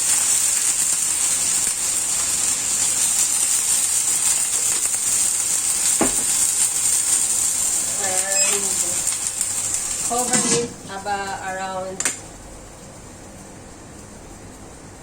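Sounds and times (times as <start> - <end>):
food sizzling in oil in a wok: 0.0 - 11.6
scraping in a wok: 9.7 - 10.8.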